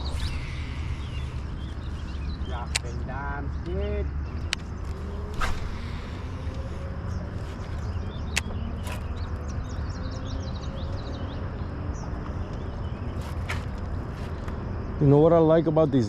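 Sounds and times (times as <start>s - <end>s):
low rumble: 0.0s - 3.5s, 4.4s - 8.3s
small birds chirping: 0.0s - 15.2s.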